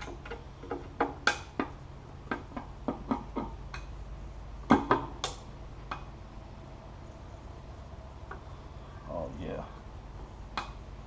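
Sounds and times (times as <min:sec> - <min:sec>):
light clicks and knocks: 0:00.0 - 0:03.9
faint low hum: 0:00.0 - 0:11.0.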